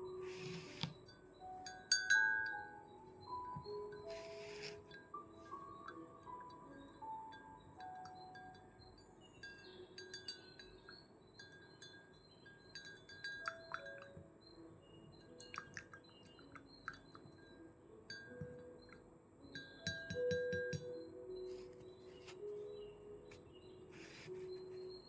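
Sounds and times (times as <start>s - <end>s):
wind chimes tinkling: 0.0s - 21.7s
gentle sustained notes: 0.0s - 25.0s.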